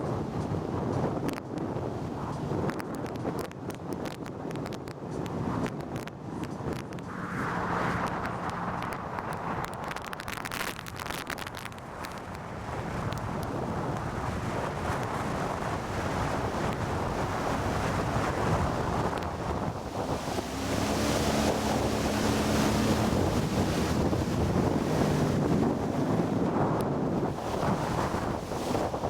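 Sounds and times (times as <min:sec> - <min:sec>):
wind rushing over microphone: 0:00.0 - 0:29.0
outboard motor humming: 0:14.1 - 0:29.0.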